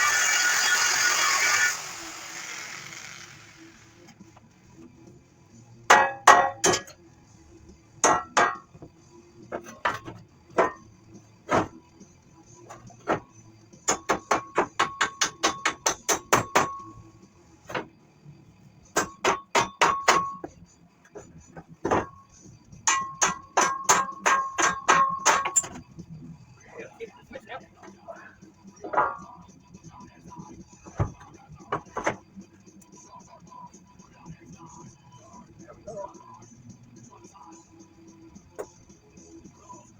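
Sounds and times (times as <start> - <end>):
hammer striking steel: 5.9 - 7.0, 8.0 - 8.8, 13.9 - 16.8, 19.0 - 20.5, 22.9 - 25.7.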